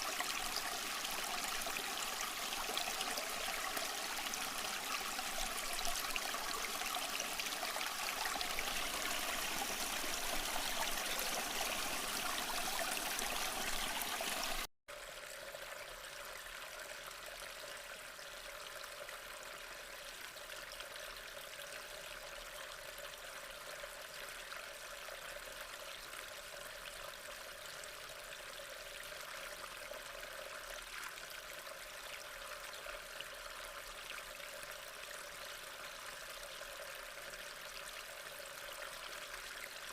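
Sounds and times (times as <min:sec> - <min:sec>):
water rushing: 0:00.0 - 0:14.7
steady stream of water: 0:00.0 - 0:39.9.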